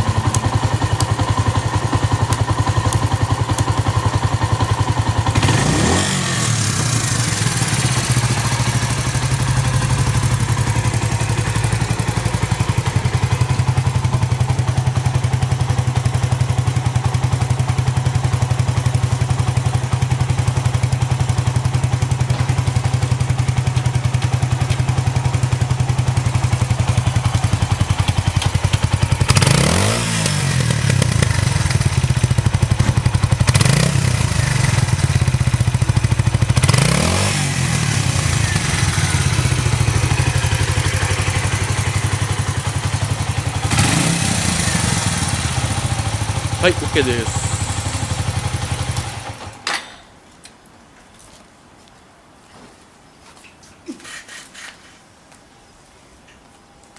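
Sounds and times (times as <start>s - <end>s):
engine revving: 0.0s - 13.9s, 28.9s - 49.6s
motorcycle engine idling: 0.0s - 49.6s.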